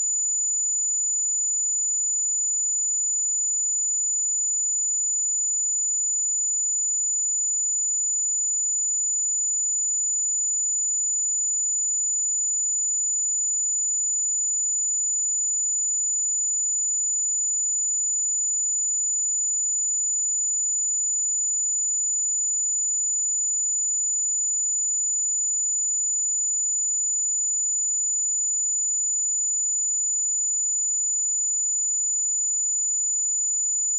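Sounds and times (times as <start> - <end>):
high-pitched sine-wave test tone: 0.0 - 33.9.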